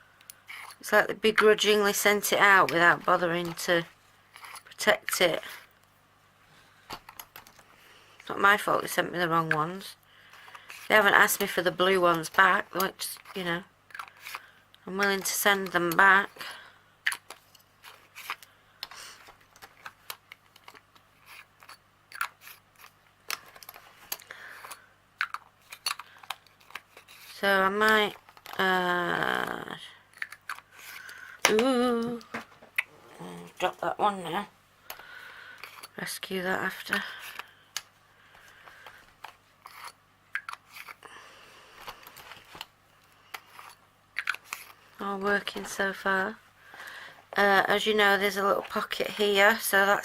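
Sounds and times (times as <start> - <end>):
scratchy rubbing: 20.6 - 23.0, 26.6 - 27.6, 39.6 - 41.0.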